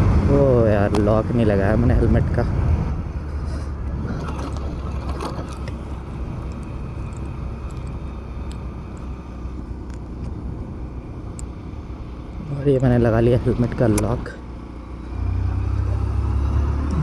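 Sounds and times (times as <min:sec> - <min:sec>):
motorcycle engine humming: 0:00.0 - 0:17.0.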